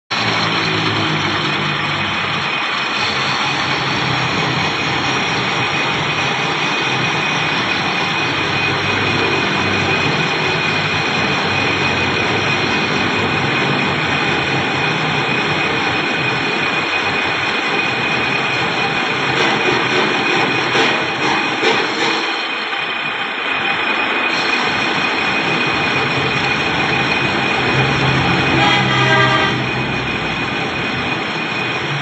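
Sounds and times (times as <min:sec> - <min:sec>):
high whine: 0:00.1 - 0:32.0
rushing machine noise: 0:00.1 - 0:32.0.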